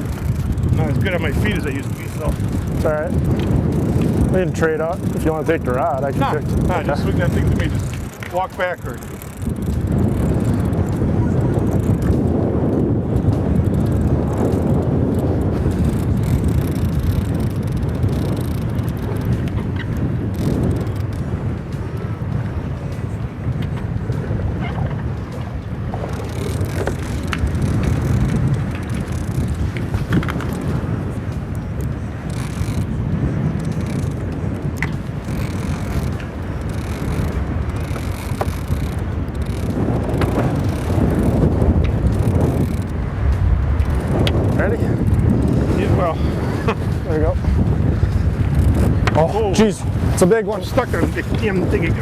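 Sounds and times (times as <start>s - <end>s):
wind buffeting microphone: 0.0s - 52.0s.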